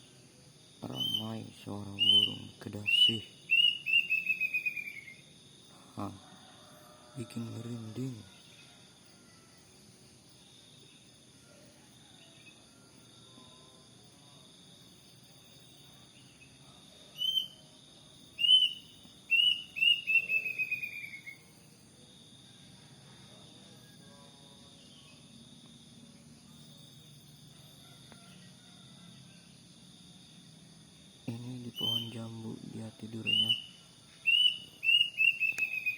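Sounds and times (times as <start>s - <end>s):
insects buzzing: 0.0s - 35.9s
cuckoo calling: 2.0s - 5.2s, 18.4s - 21.4s, 31.6s - 32.5s, 33.1s - 35.9s.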